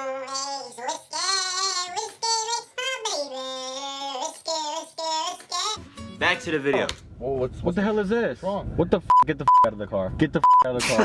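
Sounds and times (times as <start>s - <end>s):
high voice singing: 0.0s - 5.9s.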